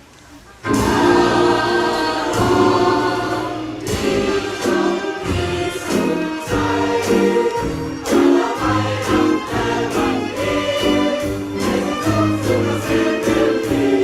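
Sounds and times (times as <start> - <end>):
group of people singing: 0.6 - 14.0
live band playing: 0.6 - 14.0.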